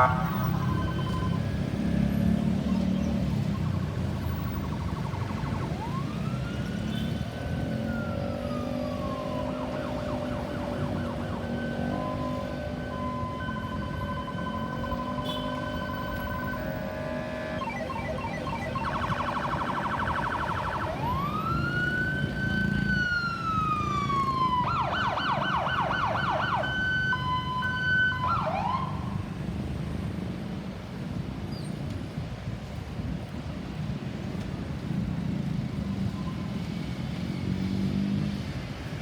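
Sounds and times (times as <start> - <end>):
ambulance siren: 0.0 - 29.5
road noise: 0.0 - 39.0.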